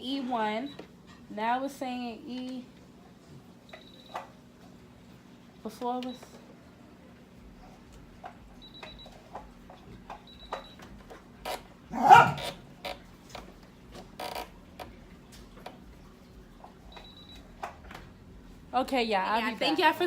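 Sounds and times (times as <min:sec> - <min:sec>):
sewing machine beeps: 0:03.7 - 0:04.2, 0:08.6 - 0:09.2, 0:10.2 - 0:10.9, 0:16.9 - 0:17.5.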